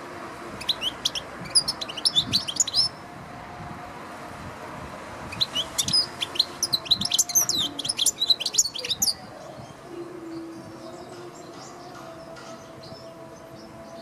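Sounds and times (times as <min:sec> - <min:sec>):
goldfinch twittering song: 0:00.6 - 0:03.0, 0:05.3 - 0:14.0.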